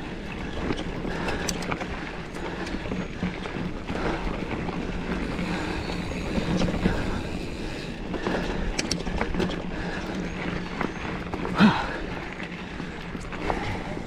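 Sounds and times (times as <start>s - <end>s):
bike chain and frame rattling: 0.0s - 14.0s
bike tyres rumbling on dirt: 0.0s - 14.0s.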